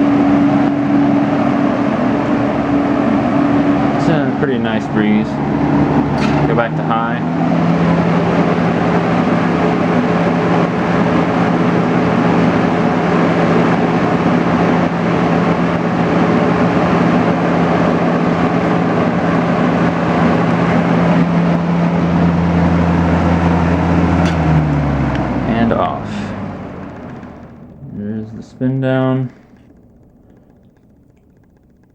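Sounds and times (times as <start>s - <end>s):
box fan running: 0.0s - 31.9s
fan switch click: 5.9s - 6.7s, 24.1s - 25.3s.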